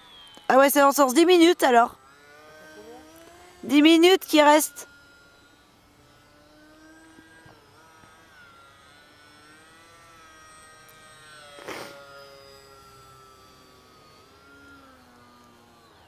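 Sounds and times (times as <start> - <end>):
model plane propeller buzzing: 0.0 - 16.0.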